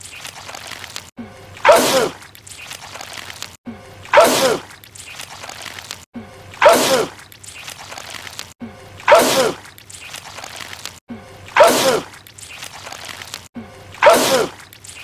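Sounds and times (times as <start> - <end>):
man sneezing loudly: 11.6 - 12.1, 14.0 - 14.6.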